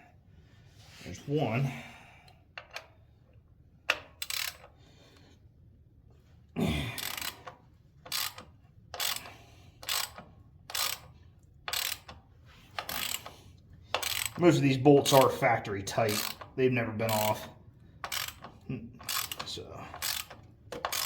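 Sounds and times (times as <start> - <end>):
ratchet wrench clicking: 3.9 - 4.8, 7.0 - 15.4, 16.1 - 17.3, 18.0 - 21.0.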